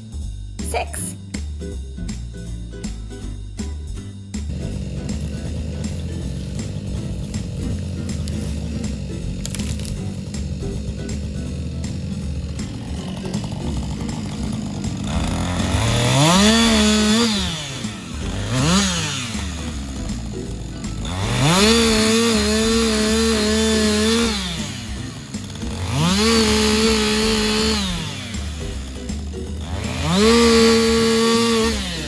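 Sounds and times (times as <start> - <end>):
chainsaw revving and idling: 4.4 - 32.0.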